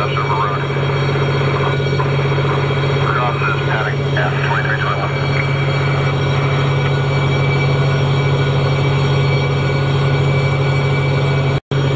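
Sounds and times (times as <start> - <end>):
heavy engine droning: 0.0 - 11.9.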